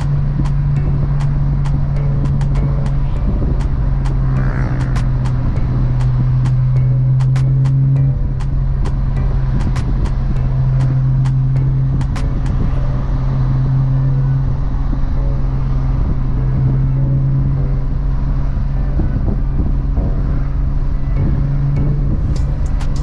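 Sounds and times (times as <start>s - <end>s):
car engine cruising drone: 0.0s - 23.0s.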